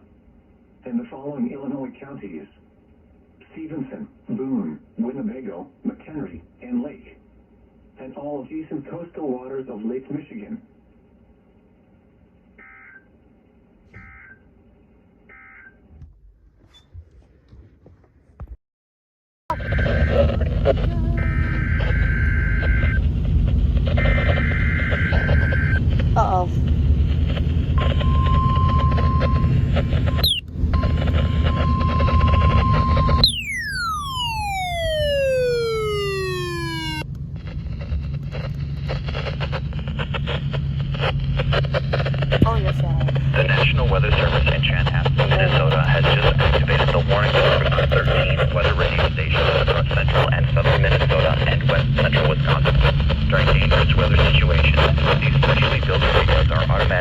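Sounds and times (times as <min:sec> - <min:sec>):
raspy electronic data warbles: 0:30.2 - 0:30.4, 0:33.2 - 0:37.0
low hum: 0:33.2 - 0:45.6.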